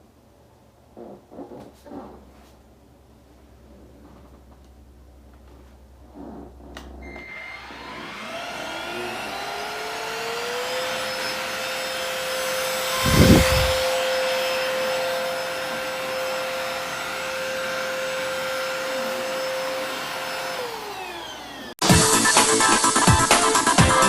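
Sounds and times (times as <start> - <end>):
vacuum motor whining: 7.0 - 21.8.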